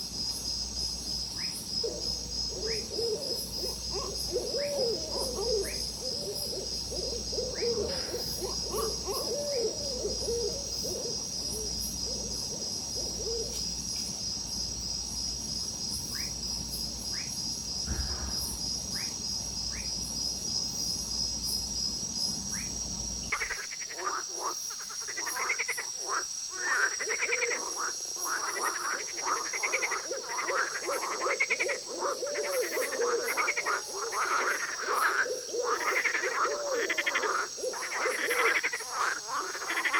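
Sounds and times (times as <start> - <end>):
frogs croaking chorus: 0.0 - 39.9
high-pitched insect trill: 0.0 - 39.9
low hooting calls: 1.8 - 11.6.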